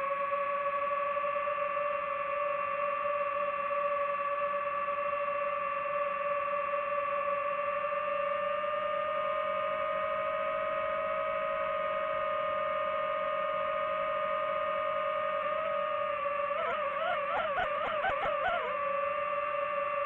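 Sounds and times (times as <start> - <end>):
drone propellers whining: 12.8 - 20.0.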